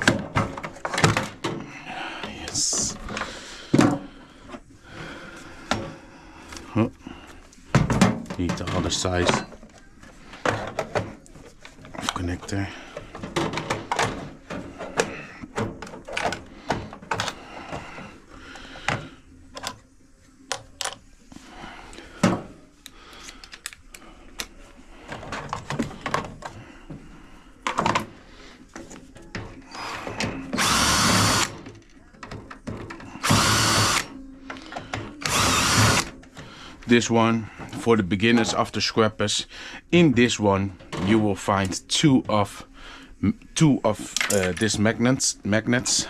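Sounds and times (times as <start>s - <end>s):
cordless drill motor whine: 30.5s - 31.6s, 33.2s - 34.1s, 35.2s - 36.1s.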